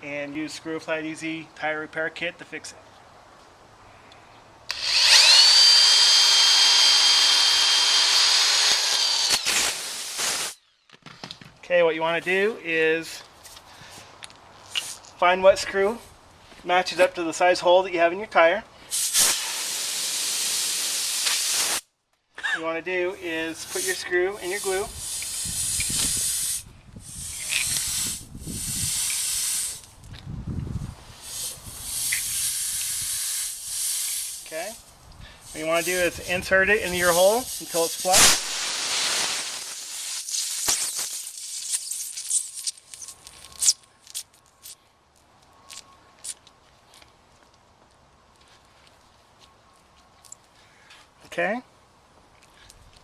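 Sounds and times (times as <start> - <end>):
drill click: 4.7 - 10.6
electric drill whining: 4.7 - 10.6
air hissing from tire: 9.2 - 10.6, 18.8 - 21.9, 23.6 - 30.0, 31.0 - 43.7.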